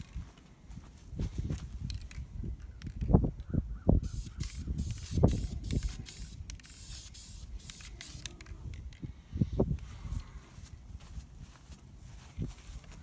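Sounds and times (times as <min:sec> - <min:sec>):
spray paint hissing: 0:04.0 - 0:08.9.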